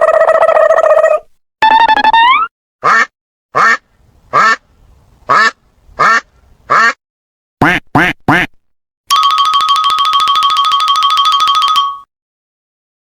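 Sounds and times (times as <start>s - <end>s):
duck quacking: 2.8s - 4.6s, 5.3s - 7.0s, 7.6s - 8.6s.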